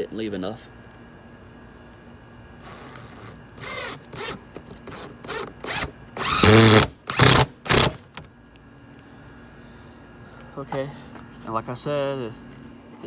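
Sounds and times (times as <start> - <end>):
power drill motor whine: 2.6 - 8.3.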